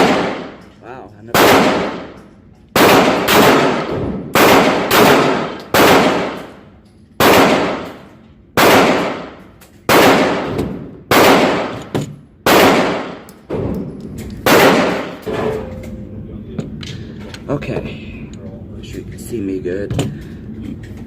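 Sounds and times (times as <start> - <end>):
echoing pistol shots: 0.0 - 0.6, 1.3 - 15.3.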